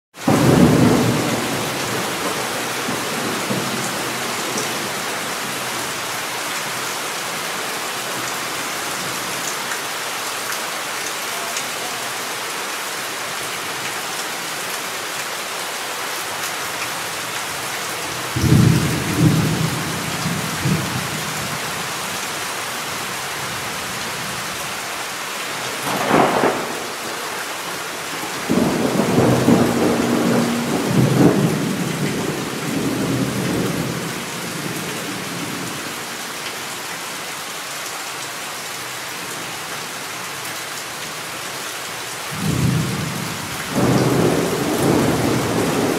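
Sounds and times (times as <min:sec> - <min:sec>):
steady rain hissing: 0:00.2 - 0:45.9
thunder rumbling: 0:25.8 - 0:27.1, 0:28.4 - 0:34.1, 0:42.4 - 0:45.9.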